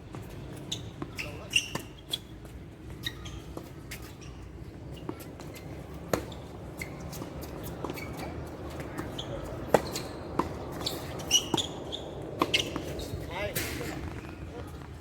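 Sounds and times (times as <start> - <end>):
short high squeaks: 0.7 - 2.3, 3.0 - 8.3, 9.0 - 14.2
tennis ball struck and bouncing: 5.0 - 13.2.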